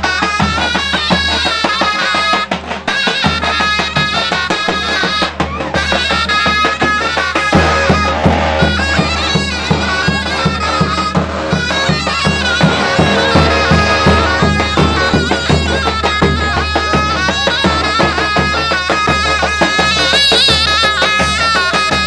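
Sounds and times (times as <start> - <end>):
shawm playing shrill melody: 0.0 - 22.0
bass drum beat: 7.5 - 18.5.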